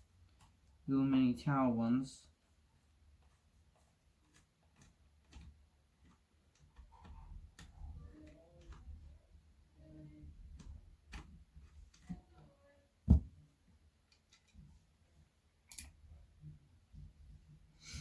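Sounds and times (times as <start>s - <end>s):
loud thump: 13.1s - 13.4s.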